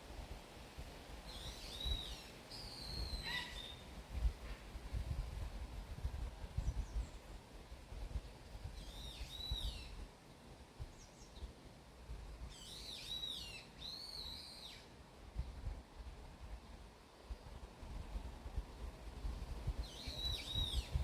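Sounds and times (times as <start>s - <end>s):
faint bird chirps: 1.3s - 3.9s, 8.7s - 10.0s, 12.5s - 14.9s, 19.8s - 21.0s
songbird singing: 1.3s - 4.0s, 6.6s - 7.4s, 8.6s - 10.1s, 10.8s - 11.6s, 12.4s - 15.0s, 19.7s - 21.0s.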